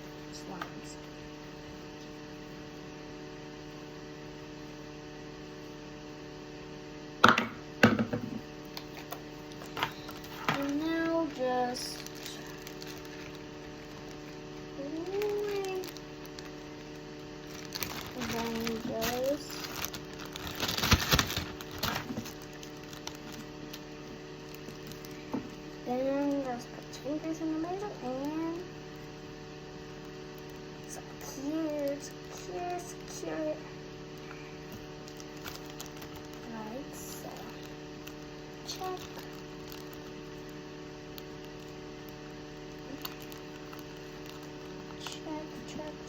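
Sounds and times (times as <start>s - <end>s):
electrical mains hum: 0.0s - 46.0s
objects knocking and clattering: 7.2s - 8.5s.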